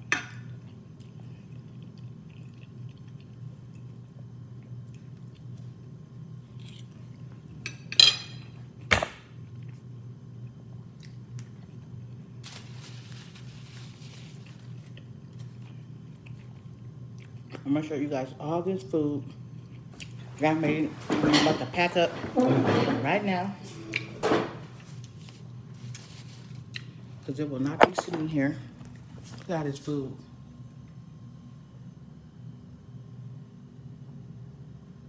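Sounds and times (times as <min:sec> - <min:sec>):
dishware clinking: 0:20.7 - 0:23.3.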